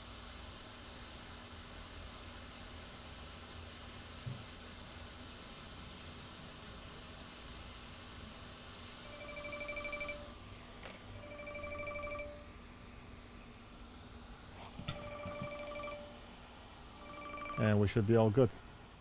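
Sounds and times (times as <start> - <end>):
telephone ringing: 9.0 - 10.4, 11.2 - 12.5, 14.9 - 16.2, 17.0 - 17.8.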